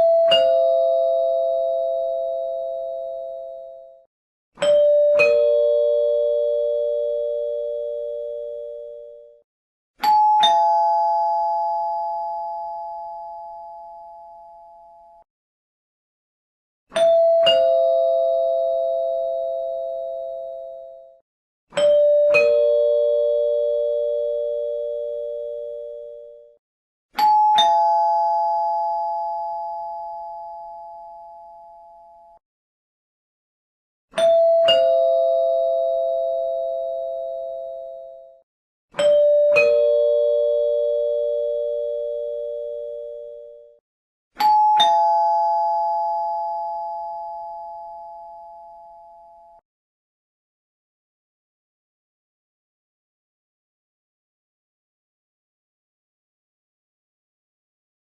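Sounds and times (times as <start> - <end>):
doorbell chime ringing: 39.0 - 43.8.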